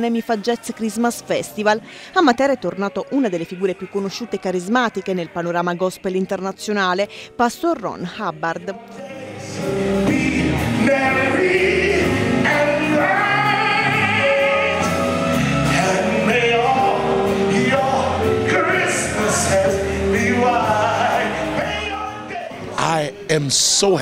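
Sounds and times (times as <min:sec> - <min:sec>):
singer with wide vibrato: 0:00.0 - 0:06.7, 0:08.2 - 0:23.1
backing voices singing: 0:00.0 - 0:06.8, 0:08.0 - 0:23.4
band with steady bass line: 0:08.9 - 0:23.0.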